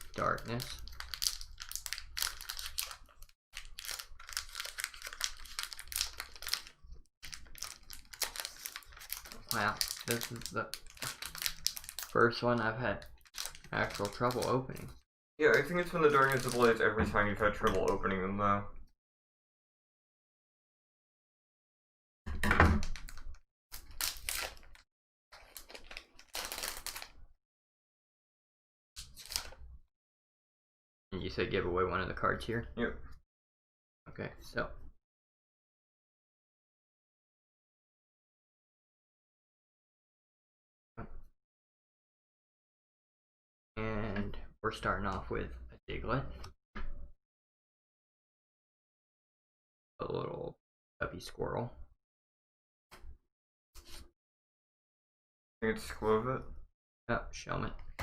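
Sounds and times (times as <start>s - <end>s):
foil wrapper crinkling and tearing: 0.0s - 12.2s, 13.0s - 14.9s, 15.5s - 16.8s, 22.9s - 24.8s, 25.4s - 27.2s, 29.0s - 29.6s.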